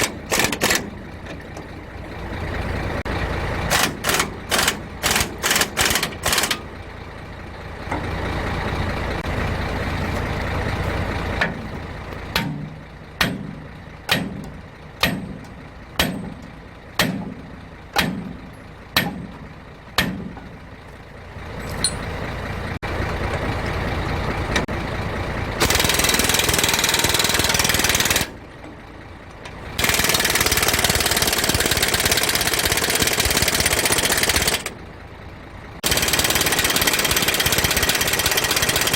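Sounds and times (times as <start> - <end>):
hammer striking steel: 12.4 - 20.5.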